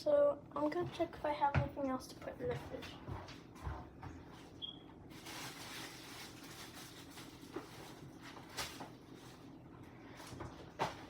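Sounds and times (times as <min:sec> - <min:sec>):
groceries rustling and knocking: 0:05.1 - 0:09.4, 0:10.1 - 0:11.0.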